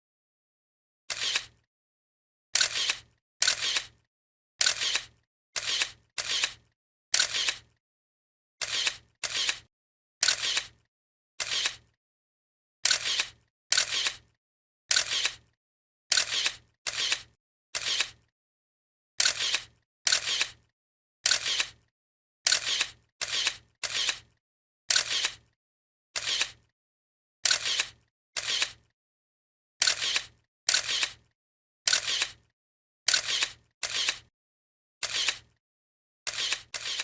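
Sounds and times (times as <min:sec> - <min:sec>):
camera shutter clicking: 0:01.1 - 0:01.6, 0:02.6 - 0:04.0, 0:04.6 - 0:06.6, 0:07.2 - 0:07.7, 0:08.6 - 0:10.8, 0:11.4 - 0:11.8, 0:12.8 - 0:14.2, 0:14.9 - 0:15.5, 0:16.1 - 0:18.2, 0:19.2 - 0:20.6, 0:21.3 - 0:21.8, 0:22.5 - 0:24.3, 0:24.9 - 0:25.4, 0:26.2 - 0:26.6, 0:27.4 - 0:28.8, 0:29.8 - 0:31.2, 0:31.9 - 0:32.4, 0:33.1 - 0:34.3, 0:35.0 - 0:35.5, 0:36.3 - 0:37.0.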